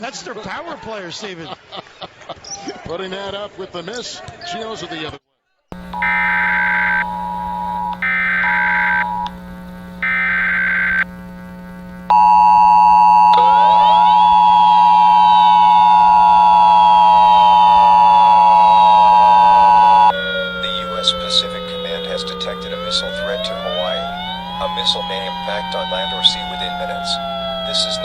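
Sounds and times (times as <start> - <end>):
siren wailing: 5.8 - 9.4, 10.0 - 11.1, 12.1 - 28.0
warbling data tones: 5.8 - 11.2, 12.1 - 28.0
two-tone attention signal: 5.9 - 9.3, 12.1 - 28.0.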